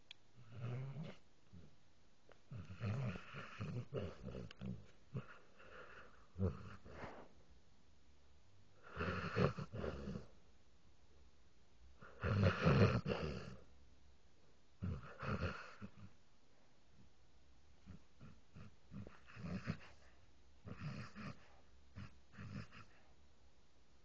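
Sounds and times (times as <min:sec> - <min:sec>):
dog snoring: 0:00.4 - 0:01.7, 0:02.5 - 0:07.2, 0:08.8 - 0:10.3, 0:12.0 - 0:13.7, 0:14.8 - 0:16.2, 0:17.8 - 0:23.1.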